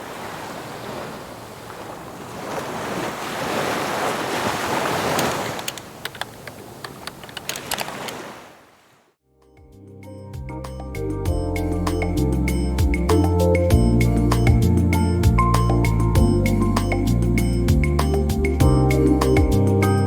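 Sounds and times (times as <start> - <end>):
ocean waves washing in: 0.0 - 7.0, 7.6 - 9.2.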